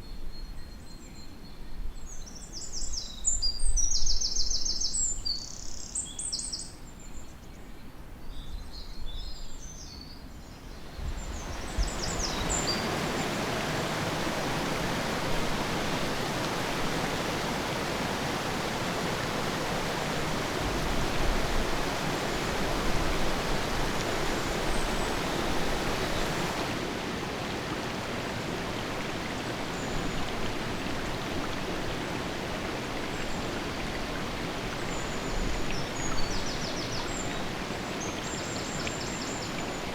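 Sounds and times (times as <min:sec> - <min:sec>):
small birds chirping: 0:10.7 - 0:26.8
river flowing: 0:10.8 - 0:39.9.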